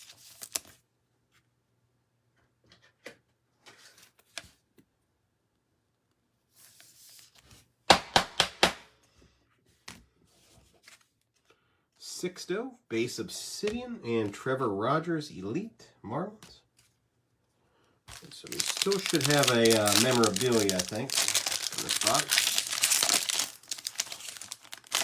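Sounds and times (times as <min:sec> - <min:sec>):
foil wrappers rustling: 0:00.0 - 0:00.8, 0:18.1 - 0:25.0.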